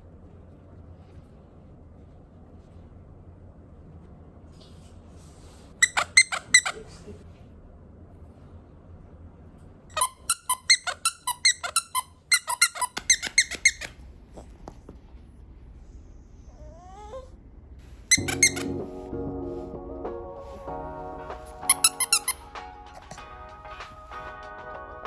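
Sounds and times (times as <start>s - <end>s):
sharp high-pitched squeaks: 5.8s - 6.8s, 9.9s - 14.0s, 18.1s - 18.9s, 21.6s - 22.6s.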